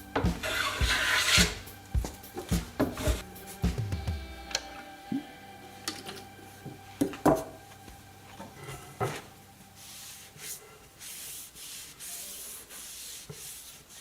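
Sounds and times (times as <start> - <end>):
sandpaper rubbing on metal: 0.4 - 1.7, 9.8 - 14.0.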